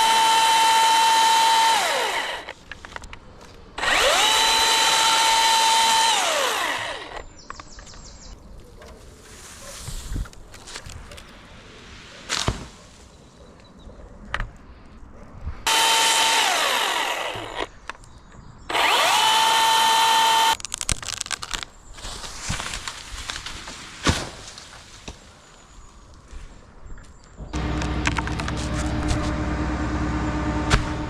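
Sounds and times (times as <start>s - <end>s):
power tool motor whining: 0.0s - 2.5s, 3.8s - 7.2s, 15.7s - 17.7s, 18.7s - 20.6s, 27.6s - 31.0s.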